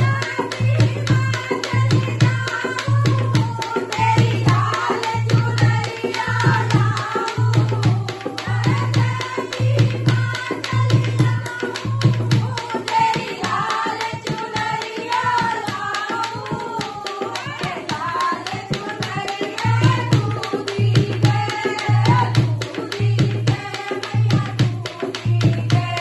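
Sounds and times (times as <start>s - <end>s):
dholak drum rhythm: 0.0s - 26.0s.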